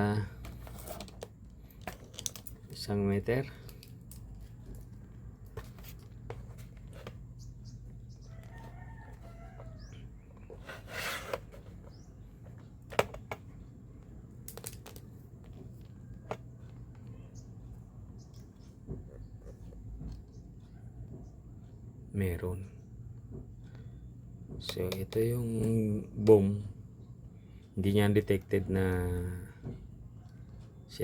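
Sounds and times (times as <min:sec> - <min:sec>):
steady low hum: 0:00.0 - 0:31.0
distant rooster crowing: 0:08.1 - 0:10.4.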